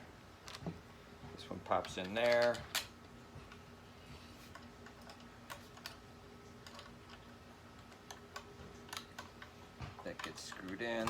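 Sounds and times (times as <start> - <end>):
faint steady hum: 0.0 - 11.0
small metal parts clicking: 1.7 - 2.9, 7.8 - 11.0.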